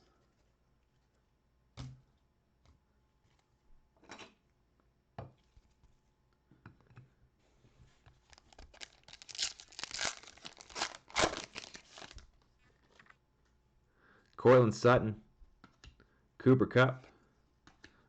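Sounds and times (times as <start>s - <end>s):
wrapper tearing and crinkling: 8.2s - 13.1s.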